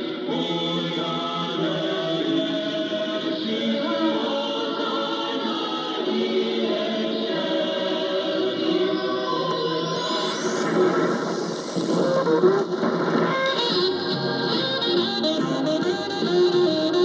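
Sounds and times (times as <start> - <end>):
choir singing a hymn over radio: 0.0 - 17.0
faint rising whistle: 7.0 - 12.7.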